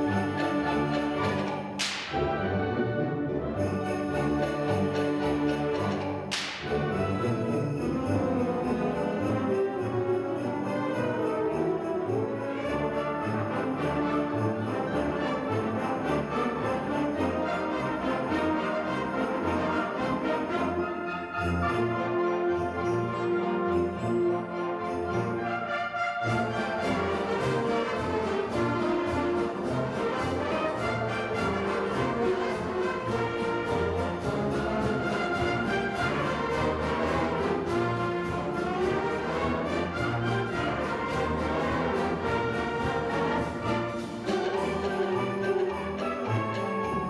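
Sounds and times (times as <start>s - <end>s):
percussion beat: 0.0s - 2.3s, 3.8s - 9.4s, 26.3s - 47.0s
wind band with brass: 0.0s - 47.0s.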